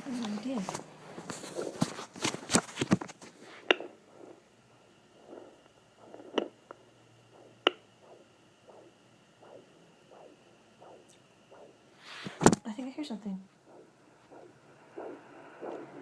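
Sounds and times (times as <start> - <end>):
faint whooshing pulses: 3.4 - 16.0
scratchy crackling from speaker: 5.2 - 6.6.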